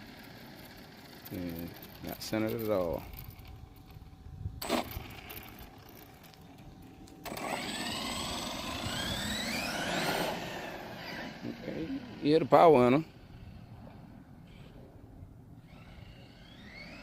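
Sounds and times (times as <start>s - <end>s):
electric motor whining: 0.0s - 14.8s, 15.6s - 17.0s.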